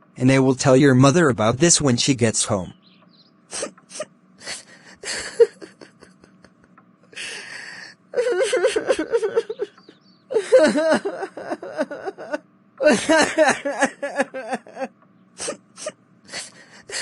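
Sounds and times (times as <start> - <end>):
child crying: 8.2 - 9.7, 10.3 - 15.9.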